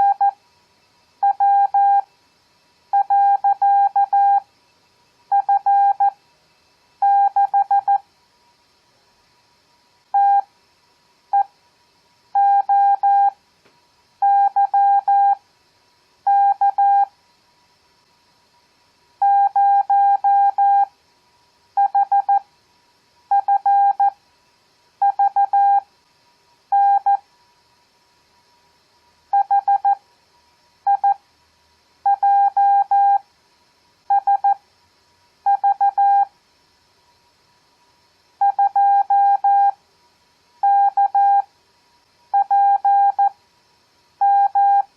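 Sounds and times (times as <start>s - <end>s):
morse code beeps: 3.0s - 4.4s, 5.3s - 6.1s, 7.0s - 8.0s, 10.2s - 10.4s, 12.4s - 13.3s, 14.2s - 15.4s, 16.3s - 17.1s, 19.2s - 20.9s, 23.3s - 24.1s, 25.0s - 25.8s, 26.8s - 27.2s, 29.4s - 30.0s, 32.1s - 33.2s, 34.1s - 34.6s, 35.5s - 36.3s, 38.4s - 39.7s, 40.6s - 41.4s, 42.4s - 43.3s, 44.2s - 44.8s.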